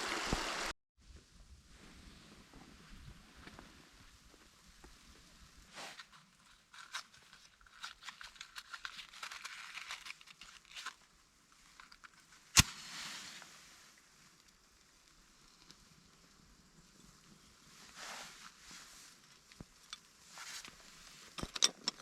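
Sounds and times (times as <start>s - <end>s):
crinkling rustling handling noise: 5.7s - 12.6s
short hiss: 12.6s - 14.0s.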